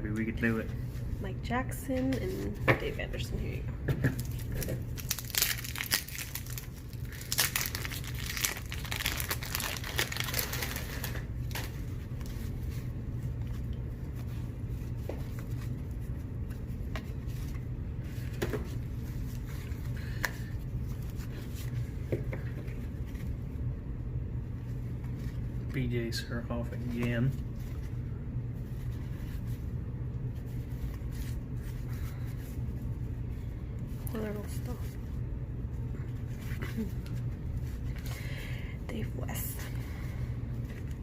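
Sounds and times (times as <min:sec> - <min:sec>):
steady low hum: 0:00.0 - 0:41.0
wax paper wrapper tearing: 0:04.2 - 0:11.8.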